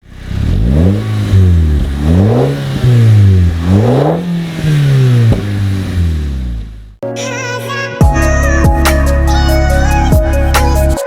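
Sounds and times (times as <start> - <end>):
car engine revving: 0.0 - 7.0
sharp exhaust cracks: 0.0 - 7.0.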